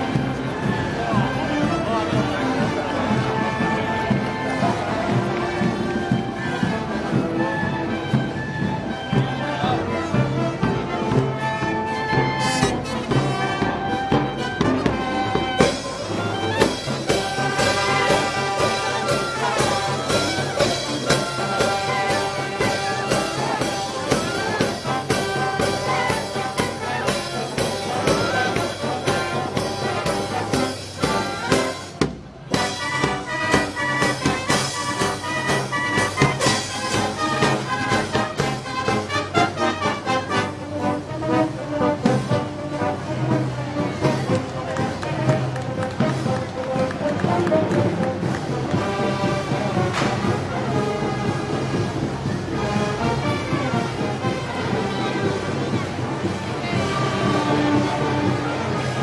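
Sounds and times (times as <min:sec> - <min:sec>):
brass band music: 0:00.0 - 0:59.0
percussion beat: 0:00.0 - 0:59.0.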